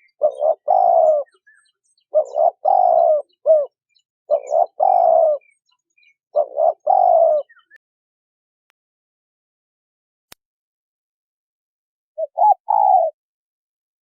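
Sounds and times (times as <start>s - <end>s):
doves cooing: 0.0s - 7.8s, 12.2s - 13.2s
faint small bird chirps: 0.0s - 7.8s, 12.2s - 13.2s.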